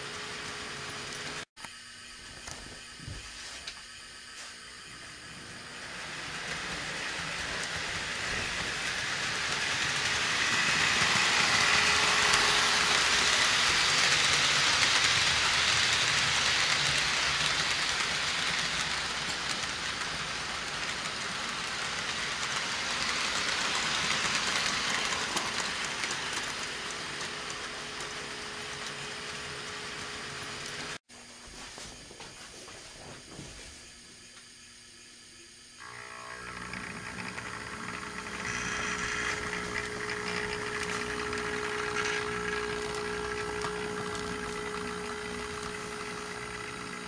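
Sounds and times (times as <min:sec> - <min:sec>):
model train rolling on track: 0:00.0 - 0:01.4, 0:05.1 - 0:31.0, 0:35.8 - 0:47.0.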